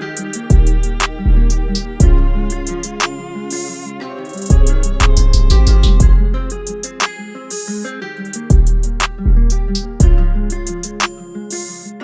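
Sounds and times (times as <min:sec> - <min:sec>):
guitar-led music with drum beat: 0:00.0 - 0:12.0.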